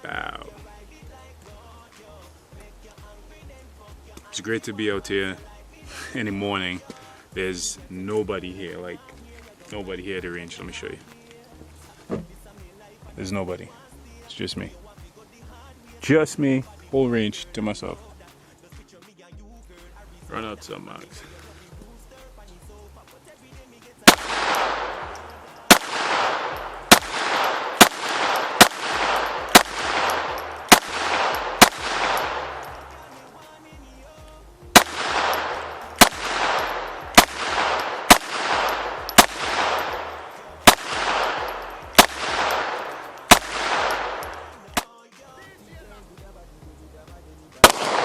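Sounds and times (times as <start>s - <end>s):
pistol shots with echo: 24.0s - 33.4s, 34.7s - 45.0s, 47.6s - 48.0s.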